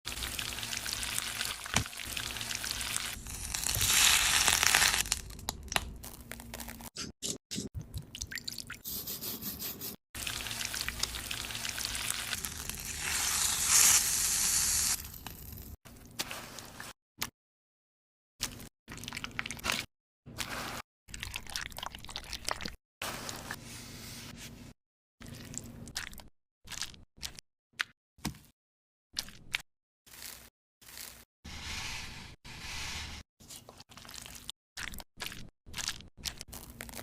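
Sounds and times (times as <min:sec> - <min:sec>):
food sizzling in a pan: 0:00.2 - 0:05.2, 0:10.3 - 0:15.0.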